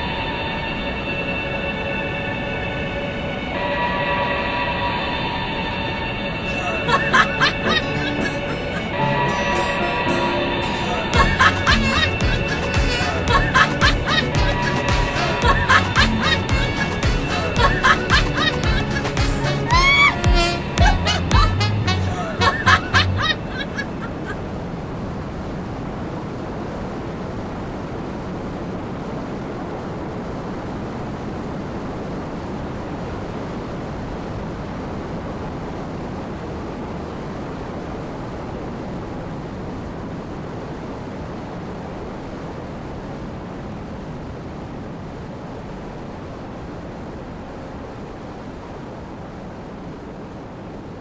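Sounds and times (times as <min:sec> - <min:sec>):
rumbling hissing noise: 0:00.0 - 0:51.0.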